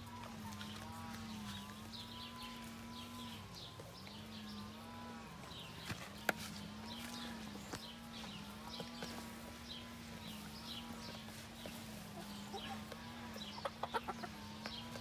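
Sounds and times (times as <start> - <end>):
hens calling: 6.4 - 15.0.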